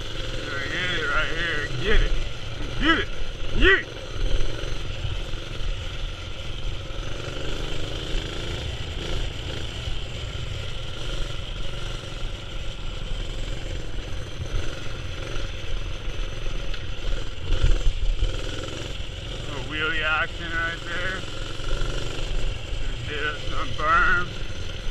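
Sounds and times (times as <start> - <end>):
mini-bike engine running: 0.0 - 24.9.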